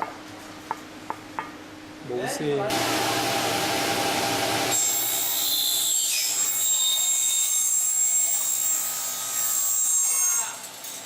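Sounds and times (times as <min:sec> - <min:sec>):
power saw cutting metal: 0:02.7 - 0:11.0.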